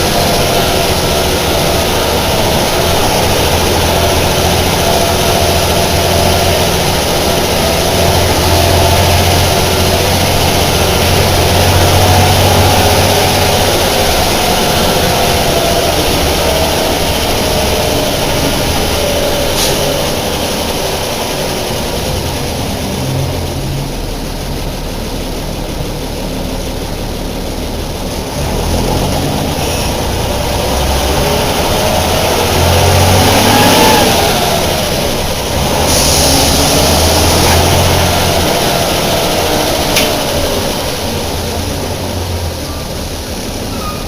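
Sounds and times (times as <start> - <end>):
bus diesel engine running: 0.0 - 44.0
rising engine whine: 0.0 - 44.0.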